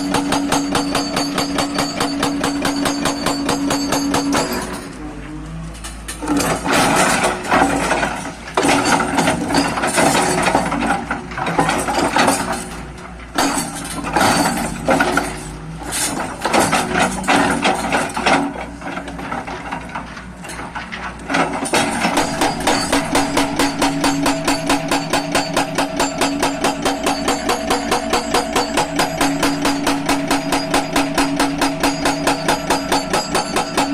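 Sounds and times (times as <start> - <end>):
hydraulic breaker hammering: 0.0 - 5.0, 21.5 - 33.9.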